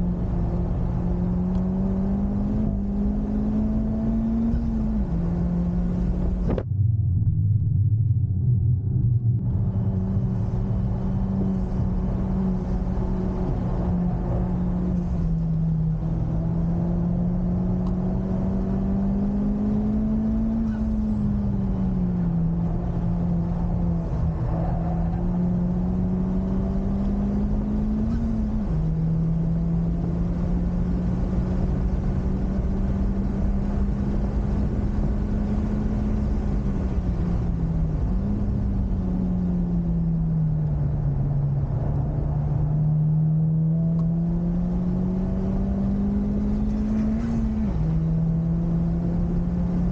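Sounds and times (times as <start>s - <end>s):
car engine running hard: 0.0s - 6.9s, 8.3s - 49.9s
road and wind noise: 0.0s - 49.9s.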